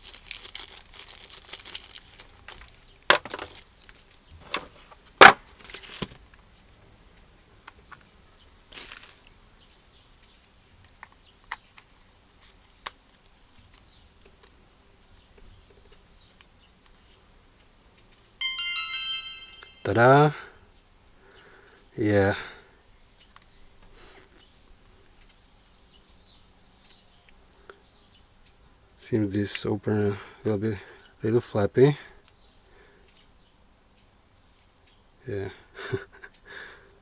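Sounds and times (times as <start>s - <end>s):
packaging tearing and crinkling: 0.0s - 4.8s, 5.4s - 6.2s, 8.7s - 9.2s.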